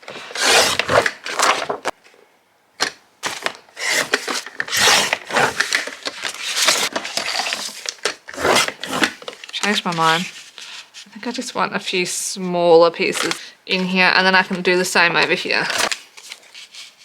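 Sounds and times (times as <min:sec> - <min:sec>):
paper rustling and crackling: 0:00.2 - 0:02.0, 0:03.2 - 0:10.9.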